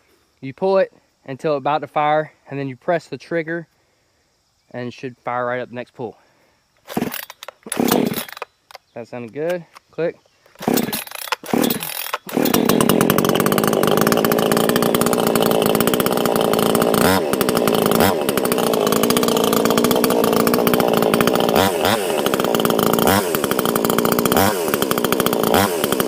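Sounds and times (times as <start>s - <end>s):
chainsaw idling: 6.8s - 9.8s, 10.5s - 26.0s.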